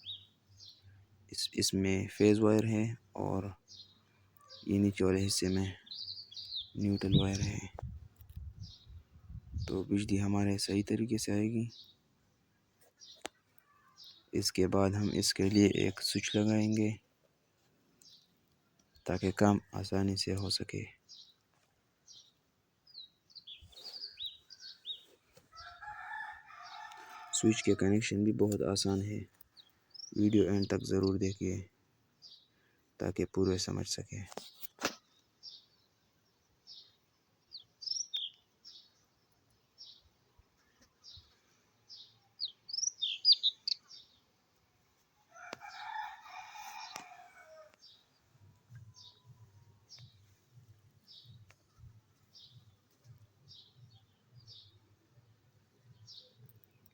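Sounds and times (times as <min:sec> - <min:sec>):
faint birds chirping: 0:00.0 - 0:56.9
rooster crowing: 0:25.5 - 0:27.8, 0:45.3 - 0:47.8.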